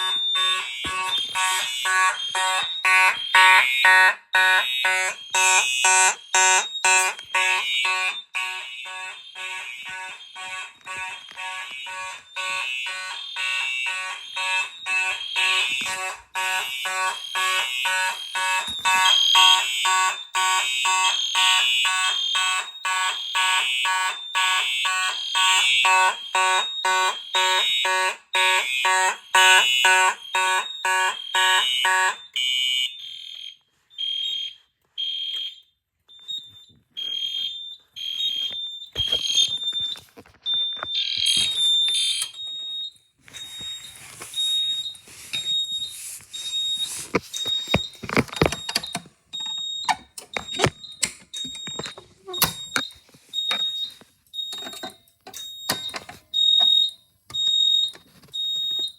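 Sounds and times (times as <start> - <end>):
fire alarm horn pulsing: 0.0 - 58.9
high-pitched electronic beep: 39.0 - 42.6
clicks and knocks: 47.1 - 53.7.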